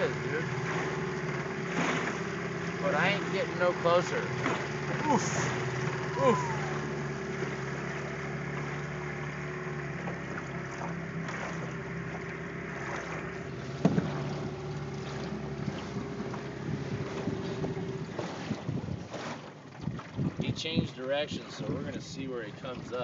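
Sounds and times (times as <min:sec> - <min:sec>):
outboard motor idling: 0:00.0 - 0:23.0
wind noise on microphone: 0:16.7 - 0:19.1, 0:19.8 - 0:22.1.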